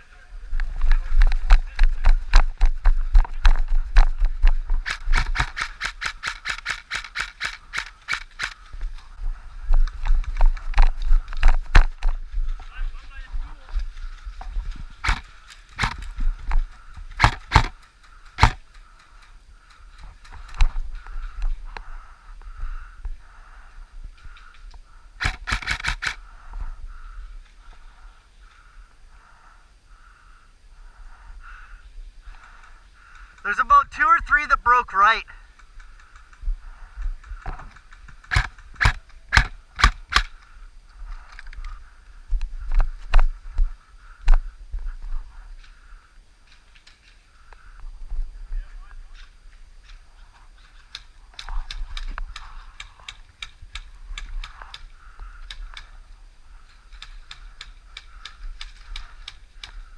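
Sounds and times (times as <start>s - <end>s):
sharp cracks: 1.2s - 8.7s, 15.0s - 20.7s, 25.2s - 26.2s, 32.3s - 40.5s
airsoft rifle single shots: 17.2s - 17.7s, 18.4s - 18.6s.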